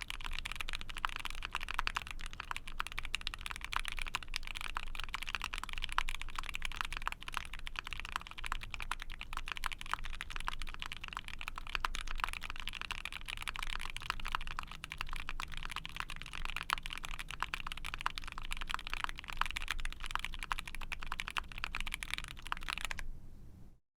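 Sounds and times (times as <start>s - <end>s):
fast mechanical keyboard typing: 0.0s - 23.0s.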